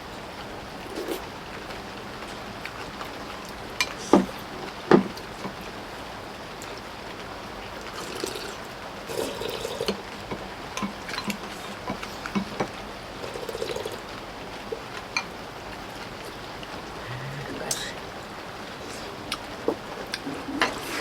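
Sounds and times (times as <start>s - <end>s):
steady rain: 0.0s - 21.0s
slurping soup: 0.8s - 1.3s, 7.8s - 10.0s, 13.2s - 14.0s
utensils clicking against bowls: 10.8s - 14.0s.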